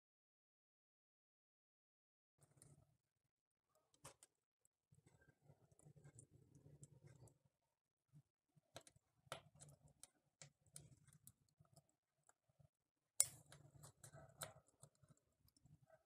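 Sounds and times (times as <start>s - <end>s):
faint light clicks and taps: 8.7s - 12.4s.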